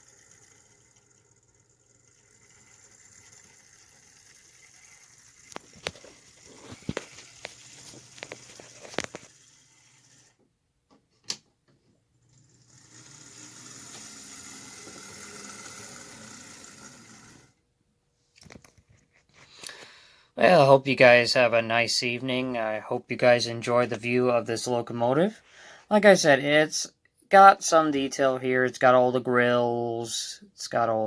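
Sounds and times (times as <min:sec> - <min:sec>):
electric motor whir: 0:00.0 - 0:10.4, 0:12.2 - 0:17.6.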